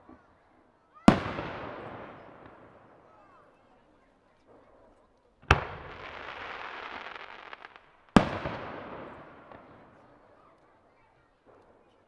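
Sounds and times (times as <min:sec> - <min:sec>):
firework booms: 0:01.1 - 0:03.0, 0:05.4 - 0:10.1
firework crackles: 0:05.5 - 0:09.9.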